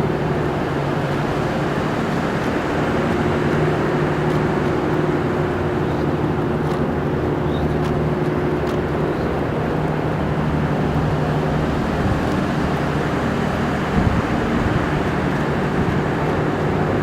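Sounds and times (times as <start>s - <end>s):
city background noise: 0.0s - 17.0s
constant low hum: 0.0s - 17.0s.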